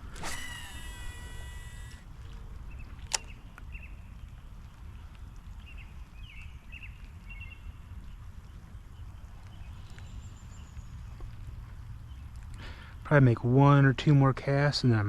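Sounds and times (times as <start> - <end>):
sharp click: 0.0 - 2.0, 3.0 - 3.4
wind rumble on microphone: 1.4 - 12.6.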